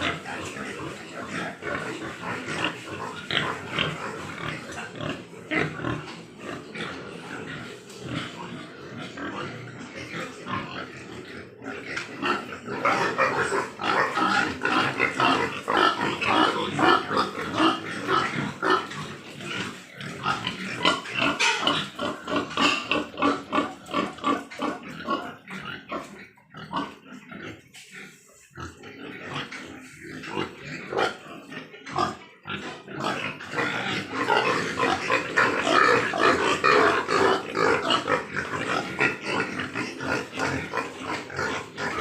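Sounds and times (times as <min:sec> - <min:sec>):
pigs grunting and squealing: 0:00.0 - 0:42.0.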